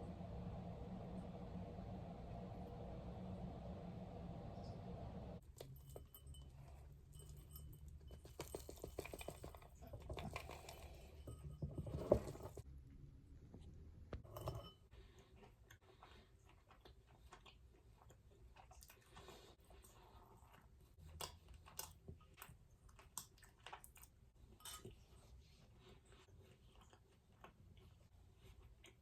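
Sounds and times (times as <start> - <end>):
steady hum: 0.0 - 5.4.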